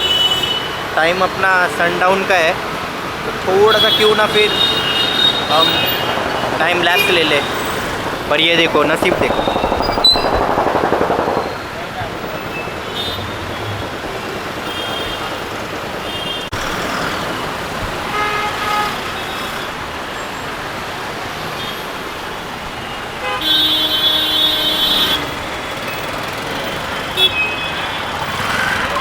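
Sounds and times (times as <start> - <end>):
vehicle horns tooting: 0.0 - 1.6, 3.5 - 9.8, 12.3 - 14.0, 14.6 - 16.6, 18.0 - 19.5, 22.8 - 29.0
road traffic noise: 0.0 - 29.0.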